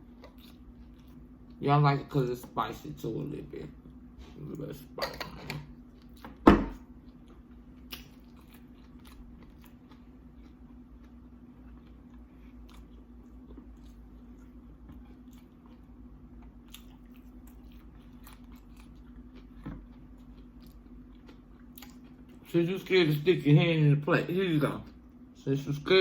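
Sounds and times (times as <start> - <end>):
chewing and crunching chips: 0.0 - 2.1, 5.7 - 22.9
steady low hum: 0.0 - 26.0.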